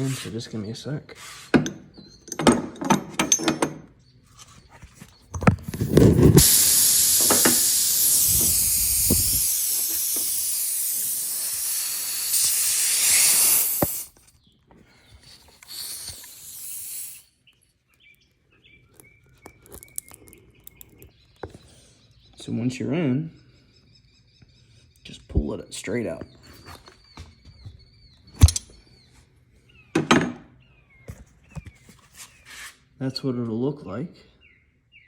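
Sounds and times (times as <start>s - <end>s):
air hissing from tyre: 5.8s - 14.2s, 15.1s - 17.3s.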